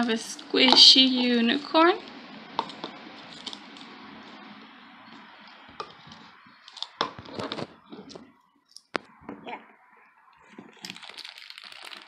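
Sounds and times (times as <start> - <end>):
plastic packaging rustling: 5.2 - 9.1, 10.4 - 12.0.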